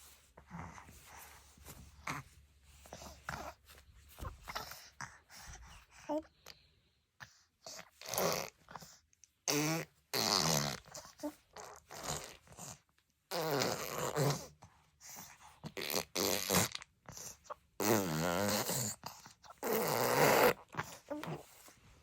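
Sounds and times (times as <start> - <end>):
baby blowing raspberries: 7.7 - 14.5, 15.7 - 21.4.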